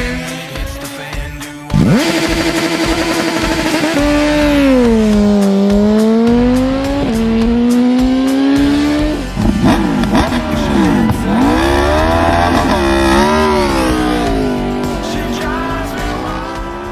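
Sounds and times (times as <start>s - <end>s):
engines passing by: 0.0s - 16.9s
motorcycle engine accelerating: 0.0s - 16.9s.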